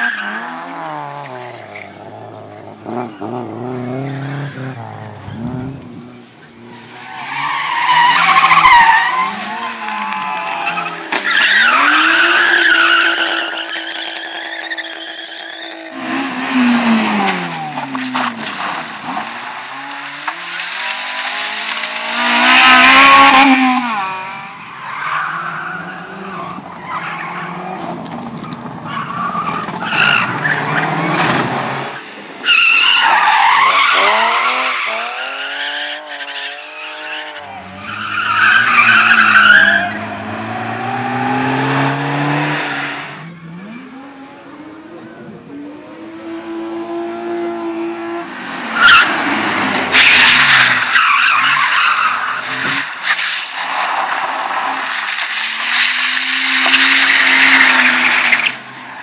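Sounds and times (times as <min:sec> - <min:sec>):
car engines revving: 0:00.0 - 0:59.0
tyres squealing: 0:06.4 - 0:24.1, 0:32.4 - 0:40.3.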